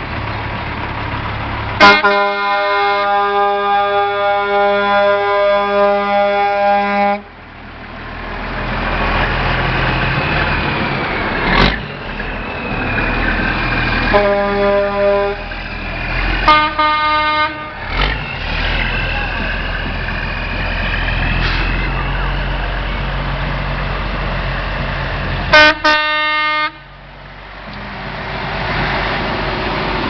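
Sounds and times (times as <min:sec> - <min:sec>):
truck diesel engines running: 0:00.0 - 0:30.0
truck air horn blasts: 0:01.8 - 0:07.3, 0:14.1 - 0:15.5, 0:16.4 - 0:18.0, 0:25.5 - 0:26.9.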